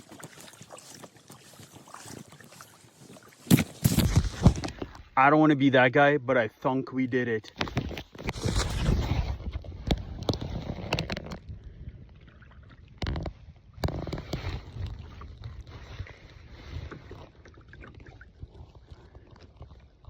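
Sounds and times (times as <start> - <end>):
paddle strokes in water: 0.0 - 5.1, 7.5 - 20.0
wind rumble on microphone: 8.2 - 20.0.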